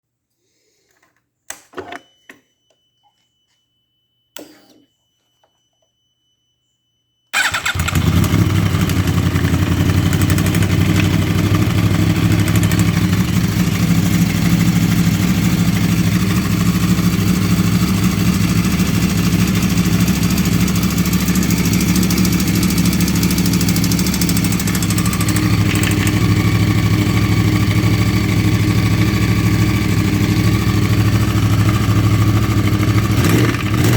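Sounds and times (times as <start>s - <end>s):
motorcycle engine idling: 7.4s - 33.9s.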